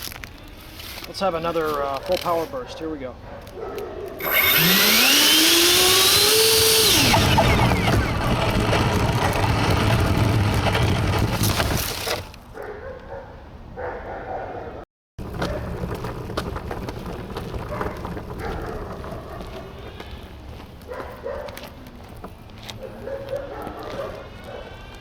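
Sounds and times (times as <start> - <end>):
electric ducted fans whining: 4.2 - 12.4.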